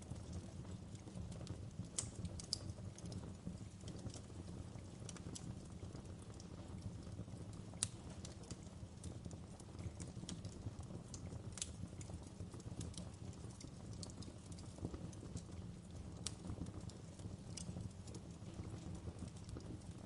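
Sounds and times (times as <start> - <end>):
wood fire crackling: 0.0 - 20.0.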